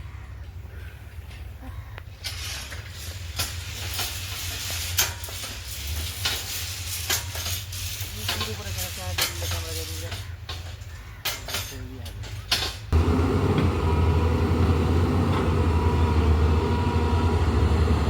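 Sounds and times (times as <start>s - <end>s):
steady hiss: 2.2s - 10.3s
low hum: 13.0s - 18.0s.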